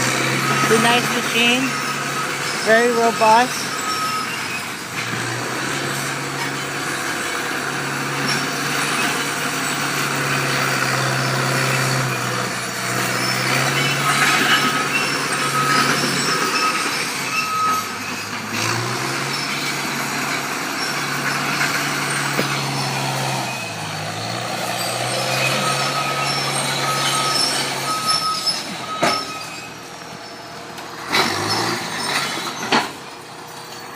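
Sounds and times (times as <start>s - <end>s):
reversing alarm beeping: 0.0s - 4.9s, 11.0s - 30.6s
bulldozer diesel engine running: 0.0s - 33.9s.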